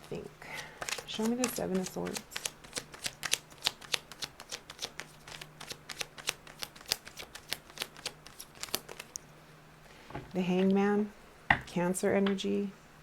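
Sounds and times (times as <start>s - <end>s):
cards being shuffled: 0.0s - 9.2s.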